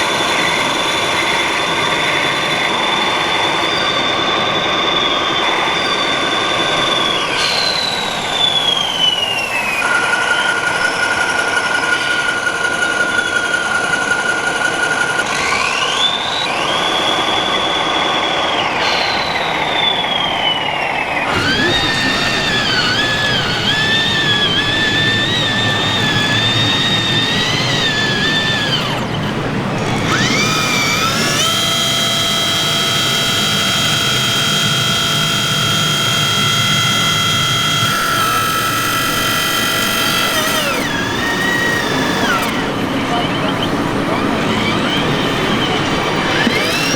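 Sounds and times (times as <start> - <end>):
electric motor whine: 14.4 - 18.0, 21.1 - 46.9.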